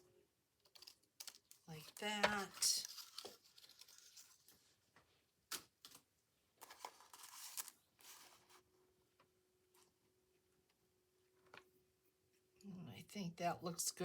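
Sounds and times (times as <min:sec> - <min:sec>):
paper rustling on a tabletop: 0:00.7 - 0:08.7.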